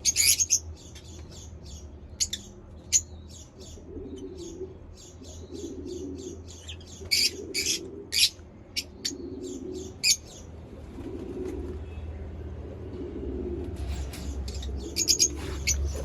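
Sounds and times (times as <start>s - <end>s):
lovebirds chirping: 0.0s - 10.6s, 13.8s - 16.0s.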